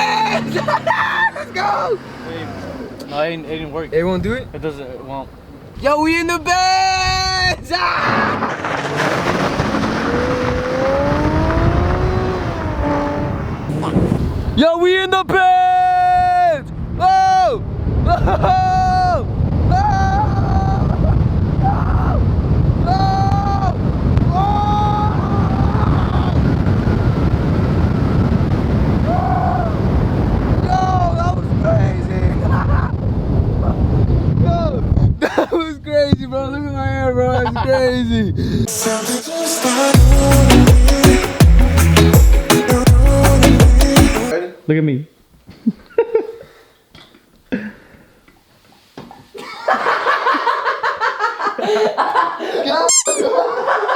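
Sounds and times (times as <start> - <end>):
group of people laughing: 0.0 - 1.7, 18.1 - 18.6, 49.4 - 53.9
wind buffeting microphone: 3.5 - 14.6, 16.7 - 35.2.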